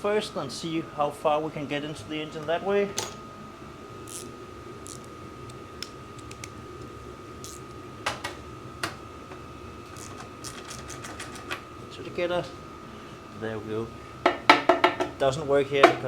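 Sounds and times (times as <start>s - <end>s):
faint high whine: 0.0s - 10.5s
hand tools clicking and tapping: 10.0s - 11.6s.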